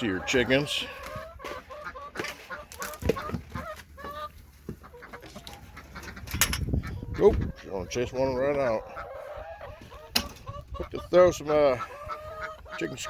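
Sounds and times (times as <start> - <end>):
hens clucking: 0.0 - 13.0.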